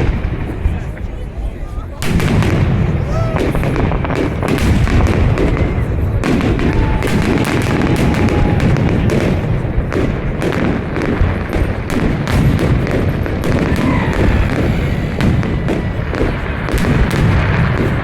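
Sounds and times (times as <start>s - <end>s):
fireworks bursts and bangs: 0.0s - 18.0s
deep rumble: 12.2s - 18.0s.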